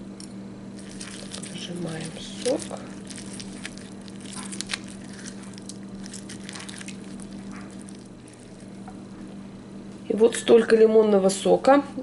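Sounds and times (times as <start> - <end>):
lemon pulp squishing: 0.7 - 9.4
small crackles and clicks: 0.8 - 9.0.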